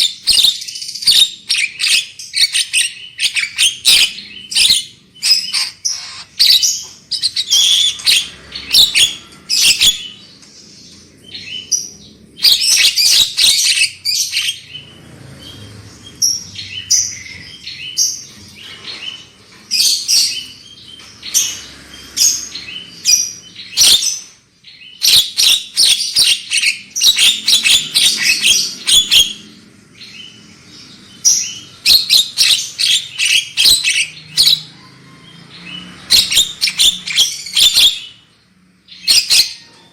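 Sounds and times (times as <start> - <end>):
bird singing chirps and whistles: 0.0 - 10.2, 22.5 - 29.4.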